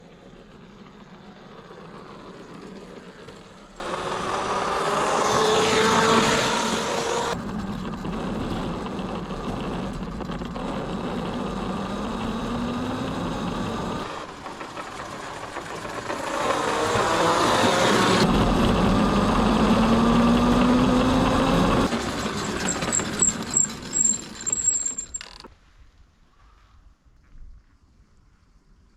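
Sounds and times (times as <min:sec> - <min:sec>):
small electric motor whining: 0:03.8 - 0:14.1
rumbling noise: 0:18.1 - 0:21.8.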